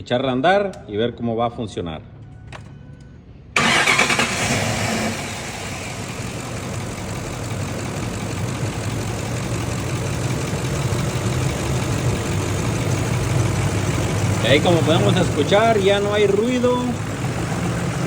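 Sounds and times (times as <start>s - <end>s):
truck engine starting and idling: 3.6s - 18.0s.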